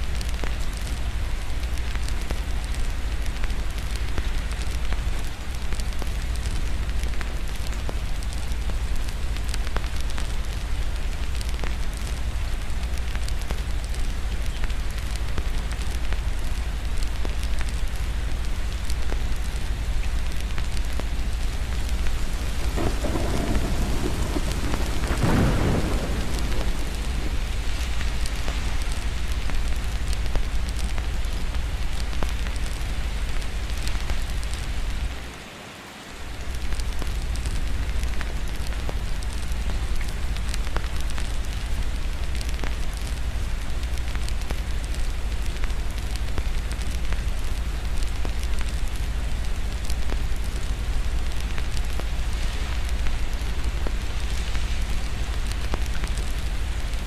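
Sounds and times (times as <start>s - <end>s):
steady rain: 0.0s - 57.0s
fireplace crackling: 20.1s - 35.3s
low rumble: 20.4s - 31.3s
thunder rolling: 21.8s - 29.2s.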